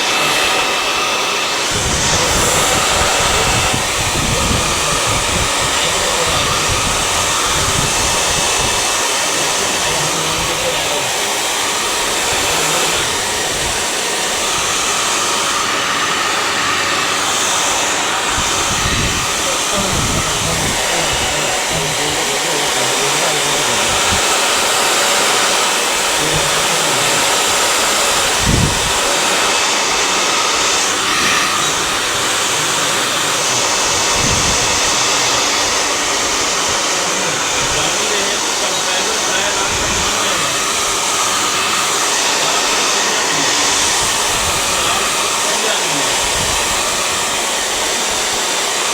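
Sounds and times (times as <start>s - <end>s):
hairdryer blowing: 0.0s - 48.9s.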